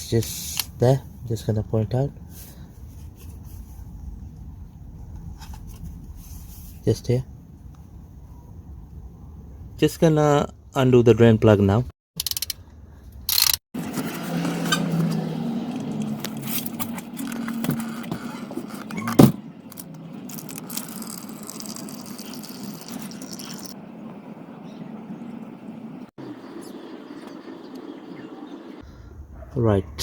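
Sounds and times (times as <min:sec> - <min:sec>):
metallic clicks and rattling: 0:12.2 - 0:12.6
oil draining: 0:19.9 - 0:23.8.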